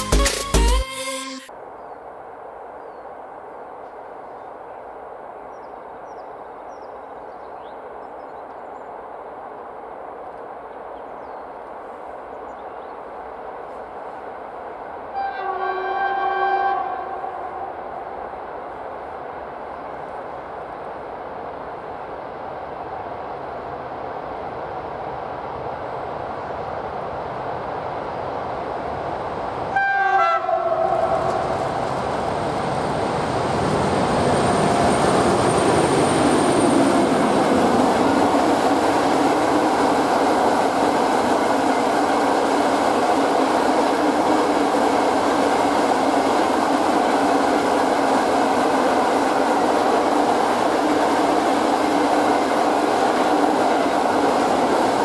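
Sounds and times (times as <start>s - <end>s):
train horn blast: 0.0s - 1.5s, 15.1s - 17.9s, 29.7s - 31.5s
diesel locomotive passing: 2.4s - 55.0s.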